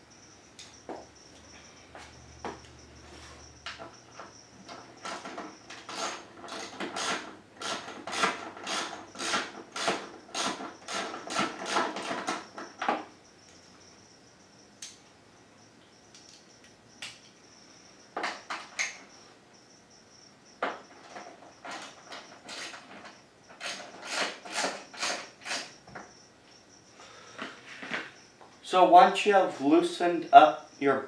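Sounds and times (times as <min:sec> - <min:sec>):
hand ratchet clicking: 0:05.8 - 0:12.4, 0:23.5 - 0:25.8.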